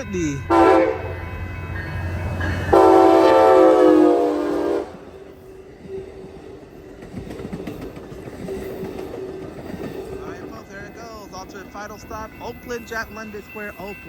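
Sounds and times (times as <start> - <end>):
passenger train rumbling past: 0.0 - 14.0
train horn chord: 0.4 - 5.4.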